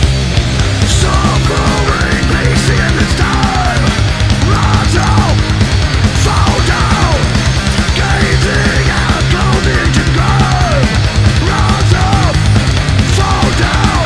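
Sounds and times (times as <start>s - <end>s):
bending lead guitar line: 0.0s - 14.0s
fast driving drums: 0.0s - 14.0s
heavy rock music: 0.0s - 14.0s.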